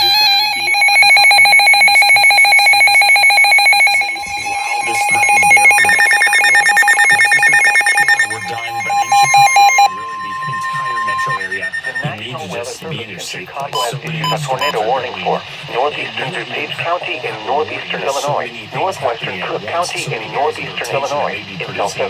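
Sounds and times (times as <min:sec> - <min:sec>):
fast pulsing electronic beeps: 0:00.0 - 0:12.6, 0:13.7 - 0:14.8
steady warning tone: 0:00.0 - 0:12.6, 0:13.6 - 0:14.8.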